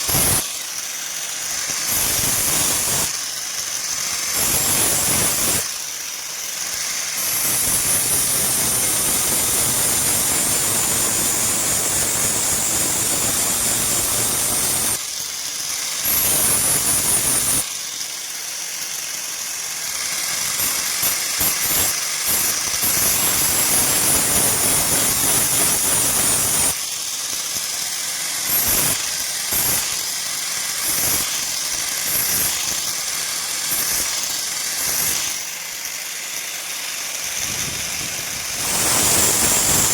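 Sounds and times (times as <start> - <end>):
machine whining and hissing: 6.6 - 15.0, 37.1 - 39.9.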